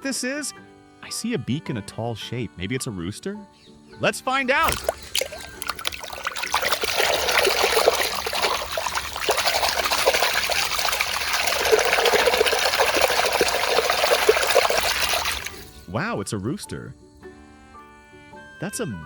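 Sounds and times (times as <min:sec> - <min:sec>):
water splattering over toy: 0:04.6 - 0:15.9.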